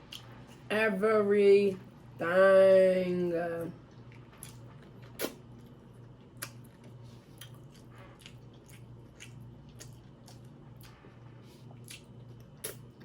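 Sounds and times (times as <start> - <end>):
chewing with wet mouth clicks: 0.1 - 0.6, 3.8 - 13.0.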